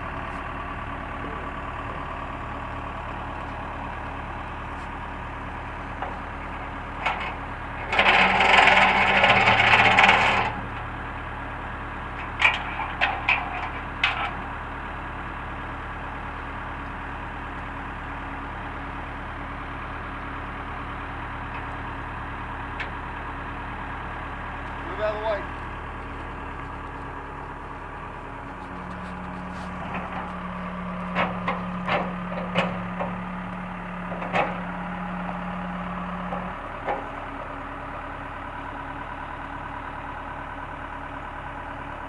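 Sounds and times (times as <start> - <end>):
backhoe engine idling: 0.0 - 42.0
loud rattling clatter: 6.0 - 10.8, 12.2 - 14.4.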